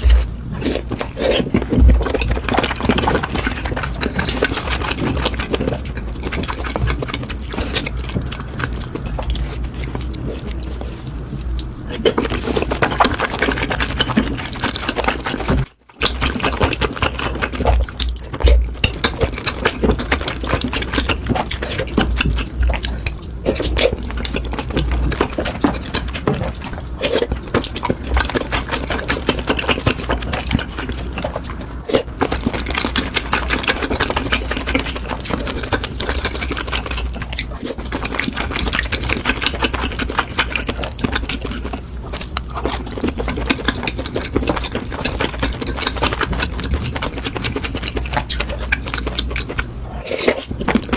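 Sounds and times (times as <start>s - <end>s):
wet chewing: 0.0s - 50.9s.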